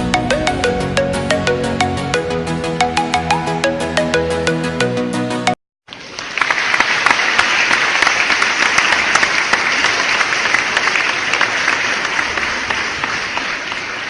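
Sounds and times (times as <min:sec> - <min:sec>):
crowd clapping: 0:05.9 - 0:14.0.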